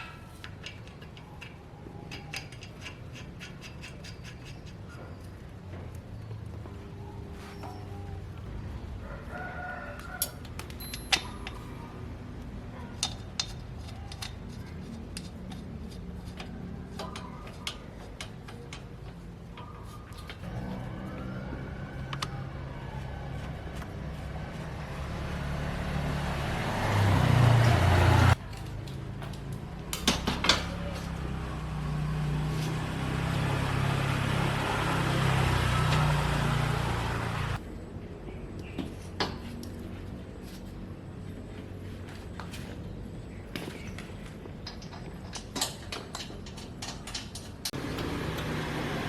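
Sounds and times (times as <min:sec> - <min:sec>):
sharp clicks and light knocks: 0:43.5 - 0:48.5.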